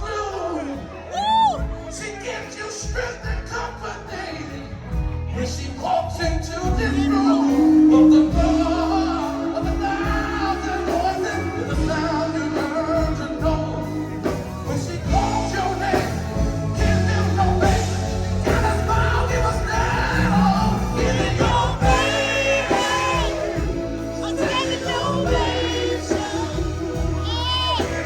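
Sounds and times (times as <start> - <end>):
music with singing: 0.0 - 28.0
steady bass beat: 15.0 - 28.0.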